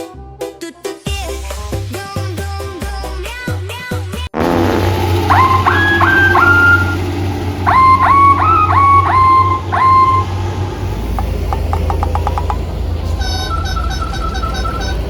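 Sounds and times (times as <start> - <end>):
multi-tone air horn tune: 4.4 - 10.6, 13.1 - 15.0
engine hum: 4.4 - 15.0.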